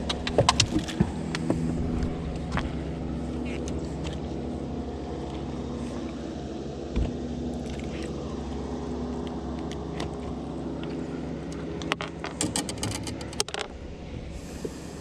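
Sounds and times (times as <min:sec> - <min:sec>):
clicks and rattles: 0:00.0 - 0:01.5, 0:11.8 - 0:13.7
boat motor humming: 0:00.0 - 0:15.0.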